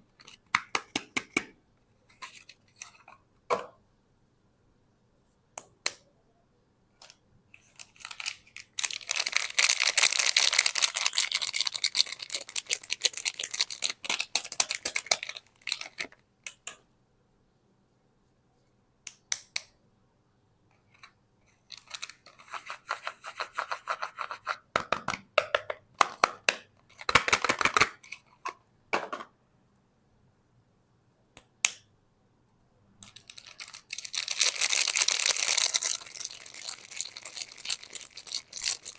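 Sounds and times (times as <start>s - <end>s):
soap wrapper rustling: 7.6s - 16.1s, 33.0s - 38.9s.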